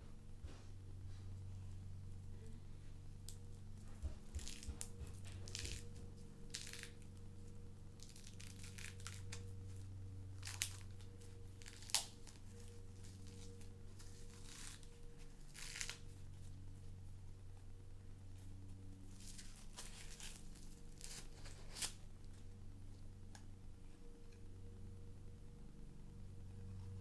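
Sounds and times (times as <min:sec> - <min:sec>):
steady low hum: 0:00.0 - 0:27.0
plastic packaging crinkling: 0:04.3 - 0:07.3, 0:08.0 - 0:16.3, 0:19.1 - 0:22.0.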